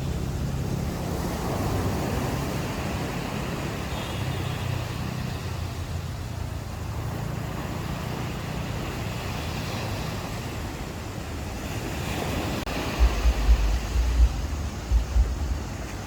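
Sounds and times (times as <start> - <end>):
sea waves washing onto shore: 0.0 - 16.0
wind buffeting microphone: 7.6 - 16.0.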